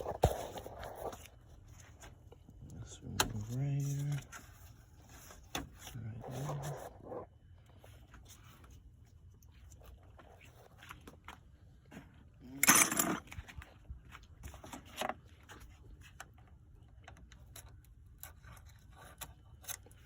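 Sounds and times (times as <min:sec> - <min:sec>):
tools and parts clicking: 0:12.6 - 0:13.4.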